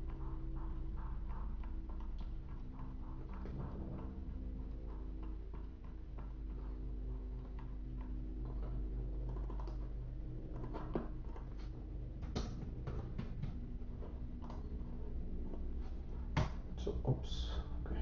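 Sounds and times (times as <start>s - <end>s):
steady low hum: 0.0s - 18.0s
computer keyboard typing: 0.1s - 9.9s.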